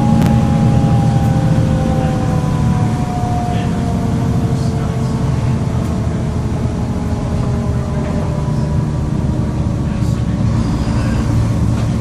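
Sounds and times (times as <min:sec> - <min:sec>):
bus diesel engine rumbling: 0:00.0 - 0:12.0.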